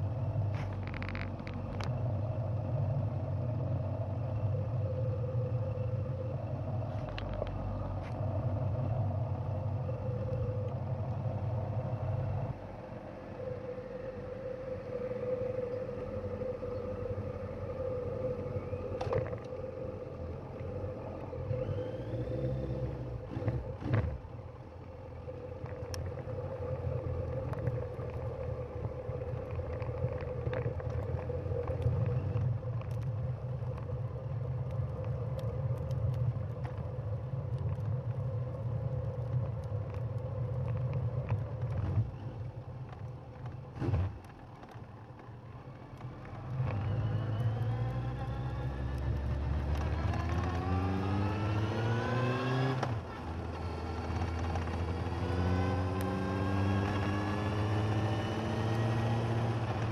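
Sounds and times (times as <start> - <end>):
motorcycle engine revving: 46.7 - 59.9.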